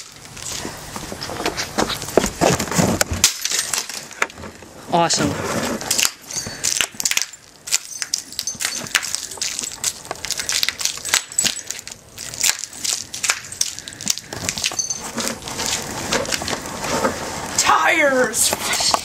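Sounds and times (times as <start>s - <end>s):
plastic crunching and cracking: 5.6s - 17.6s.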